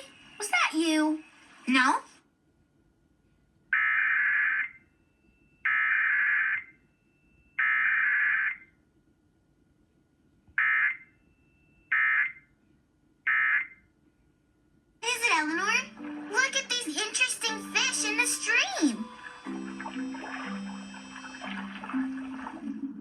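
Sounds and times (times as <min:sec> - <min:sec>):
raspy buzzing data bursts: 0:15.0 - 0:22.6.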